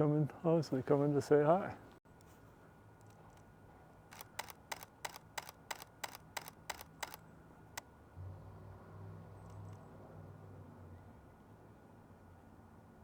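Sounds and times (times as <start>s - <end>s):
camera shutter firing: 4.1s - 7.2s.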